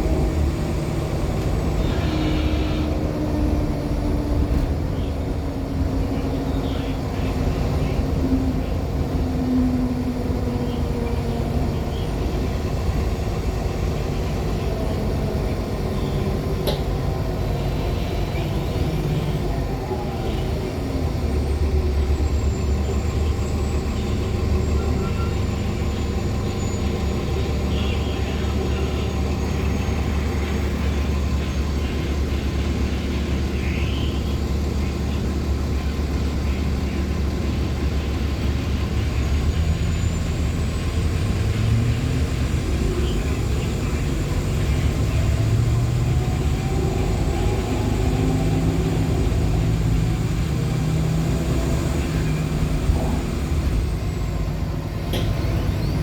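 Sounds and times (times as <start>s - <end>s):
bus drive noise with whine: 0.0s - 56.0s
deep engine drone: 0.0s - 56.0s.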